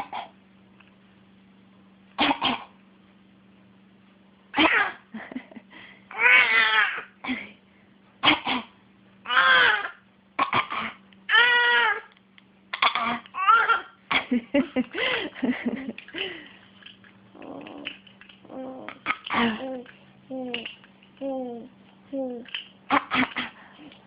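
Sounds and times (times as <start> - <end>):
baby coughing: 2.2 - 2.8, 4.6 - 5.0, 8.2 - 8.8, 9.4 - 11.0, 12.8 - 14.3, 19.0 - 19.8, 22.9 - 23.6
baby pitched vocal sounds: 6.1 - 7.1, 9.2 - 10.0, 11.3 - 12.1, 12.8 - 14.0, 17.4 - 23.4.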